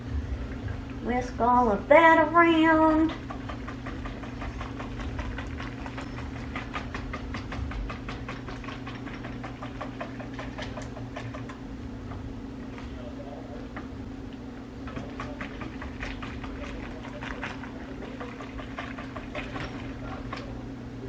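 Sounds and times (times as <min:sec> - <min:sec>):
low steady hum: 0:00.0 - 0:21.0
whisk scraping a pot: 0:03.1 - 0:11.6, 0:14.9 - 0:20.6.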